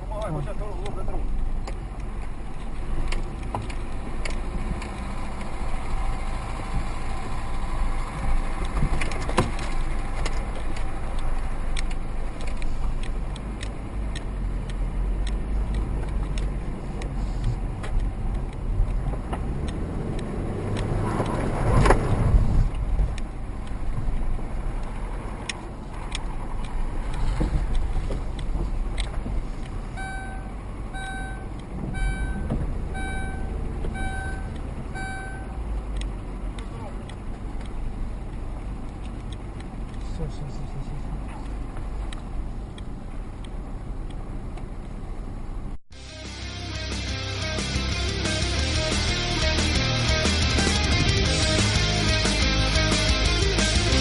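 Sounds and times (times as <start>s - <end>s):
car rumbling on the move: 0.0s - 54.0s
electronic beeps: 30.0s - 35.6s.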